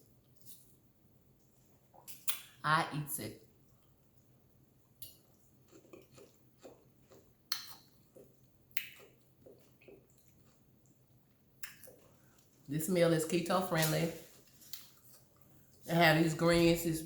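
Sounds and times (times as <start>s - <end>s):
person chewing with mouth smacks: 3.7s - 12.7s.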